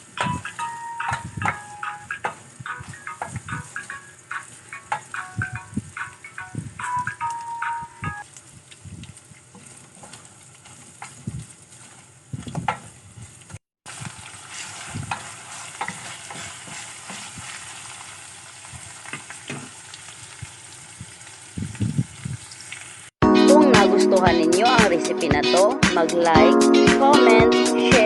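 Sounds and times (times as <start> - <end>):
chicken sizzling in a pan: 1.6 - 6.4, 8.2 - 23.1
utensil scraping a pan: 14.4 - 17.7.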